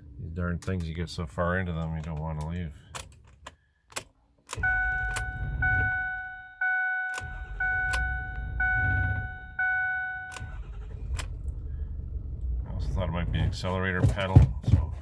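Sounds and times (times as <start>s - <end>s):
diesel engine rumble: 4.5s - 15.0s
warning chime dinging: 4.6s - 10.8s.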